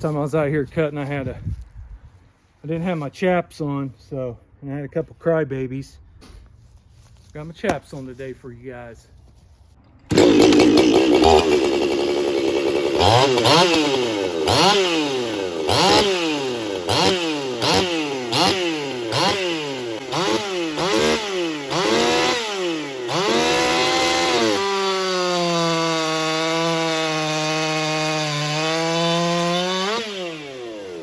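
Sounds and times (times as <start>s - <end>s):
two-stroke chainsaw revving: 10.1s - 31.0s.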